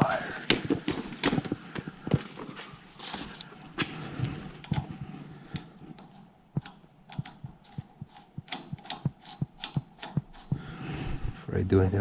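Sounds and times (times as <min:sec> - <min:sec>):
tools and parts clicking: 0:05.5 - 0:10.5.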